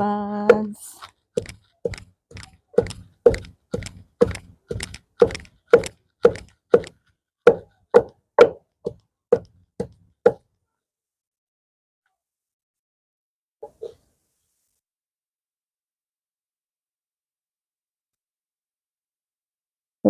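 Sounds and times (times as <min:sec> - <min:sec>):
pestle pounding in a mortar: 0:01.4 - 0:10.4.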